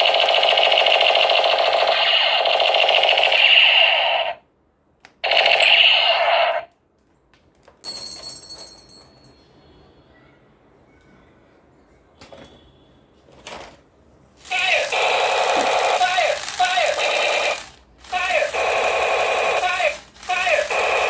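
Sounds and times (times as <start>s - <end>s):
toy machine gun rattling: 0.0s - 4.4s, 14.4s - 21.0s.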